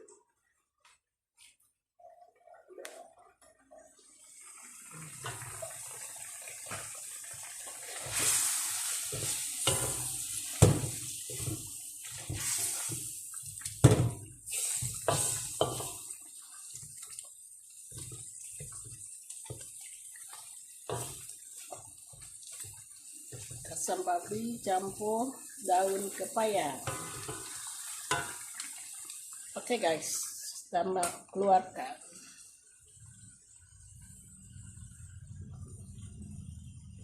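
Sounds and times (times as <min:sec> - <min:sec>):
water running into a sink: 0:03.9 - 0:30.4
dishes knocking and clattering: 0:09.6 - 0:11.6, 0:13.8 - 0:14.3.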